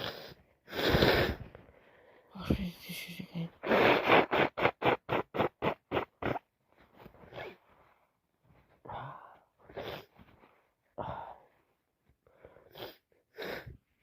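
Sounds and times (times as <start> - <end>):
breathy nasal bursts: 0.0 - 1.4, 3.6 - 6.5
person blowing nose into tissue: 0.0 - 1.5, 3.5 - 6.5, 12.6 - 13.8.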